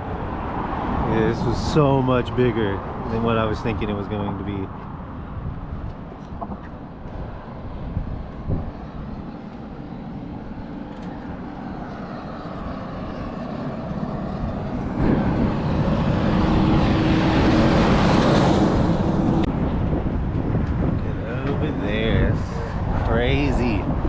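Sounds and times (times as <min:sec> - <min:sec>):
large vehicle passing: 0:00.0 - 0:05.5, 0:07.2 - 0:24.0
low hum: 0:05.1 - 0:23.1.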